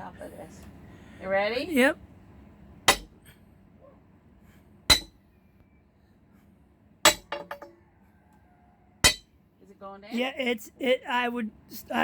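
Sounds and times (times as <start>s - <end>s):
hammer striking metal pry bar: 2.9s - 3.2s, 4.9s - 5.2s, 7.0s - 7.8s, 9.0s - 9.3s.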